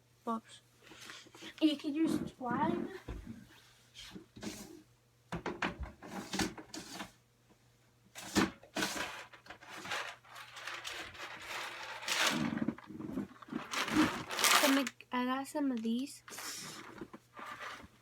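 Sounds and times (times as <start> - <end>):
packaging rustling: 8.2 - 15.0, 16.7 - 18.0.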